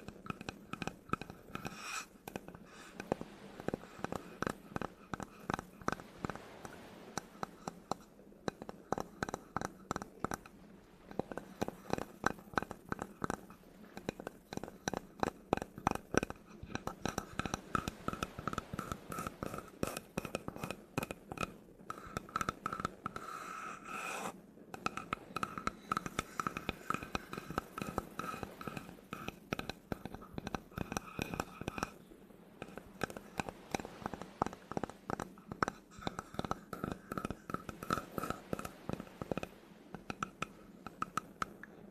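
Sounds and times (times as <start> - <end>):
scratch on wood: 22.4 - 24.3.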